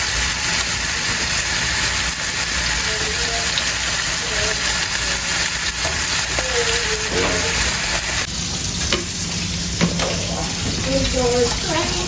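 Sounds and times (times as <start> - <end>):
bacon sizzling in a frying pan: 0.0 - 12.0.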